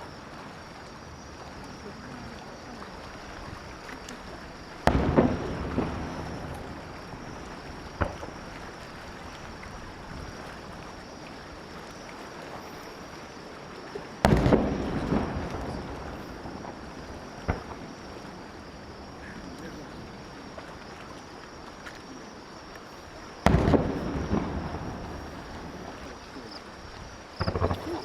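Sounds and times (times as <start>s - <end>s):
steady background hiss: 0.0s - 28.0s
small firework pop: 4.8s - 6.6s, 8.0s - 8.4s, 14.2s - 15.8s, 17.4s - 17.8s, 23.4s - 25.2s, 27.4s - 28.0s
firework shells bursting: 4.8s - 6.9s, 14.2s - 16.4s, 23.4s - 25.9s, 27.4s - 28.0s.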